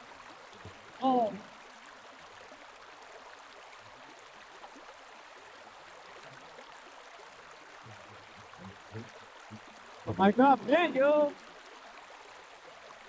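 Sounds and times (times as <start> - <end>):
flowing water rushing: 0.0 - 13.0.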